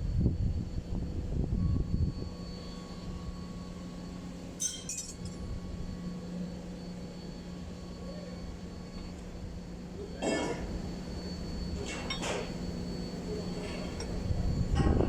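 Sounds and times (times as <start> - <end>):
steady background hum: 0.0 - 15.0
metal tools clinking: 4.6 - 5.4.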